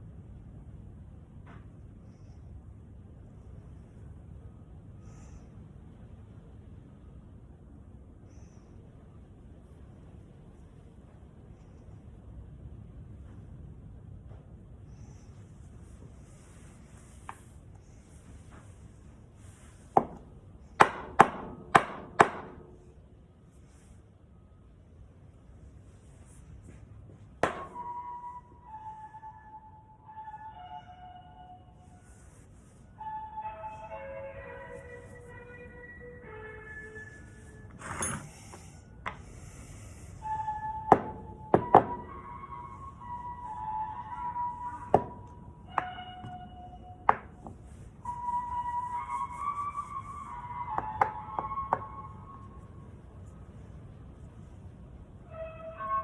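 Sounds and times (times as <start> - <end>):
sharp knocks of hard parts: 20.8 - 22.7, 27.4 - 27.8
background music: 27.4 - 32.1, 33.0 - 38.2, 40.2 - 47.4, 48.0 - 53.2, 55.3 - 56.0.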